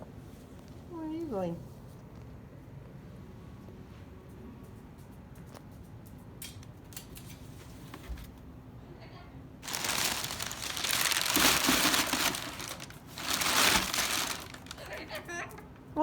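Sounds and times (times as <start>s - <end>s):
packing paper crinkling: 9.6s - 15.2s.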